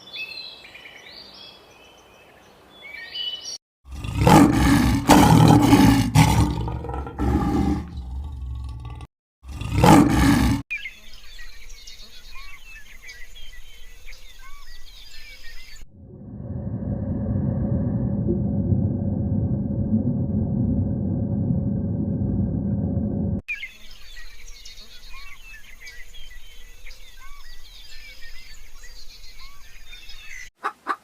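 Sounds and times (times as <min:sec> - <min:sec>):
large animal roaring: 0:03.9 - 0:10.6, 0:16.0 - 0:23.4
birds chirping: 0:23.5 - 0:31.0.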